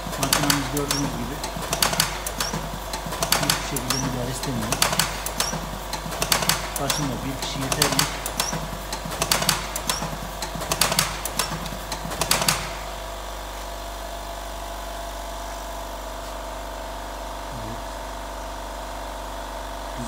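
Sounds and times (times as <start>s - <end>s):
machine mechanism clacking: 0.0s - 13.0s
motor humming: 0.0s - 13.2s.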